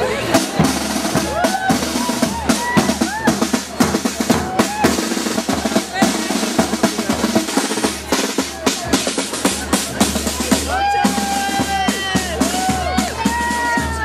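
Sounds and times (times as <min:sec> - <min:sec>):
marching band drums: 0:00.0 - 0:14.0.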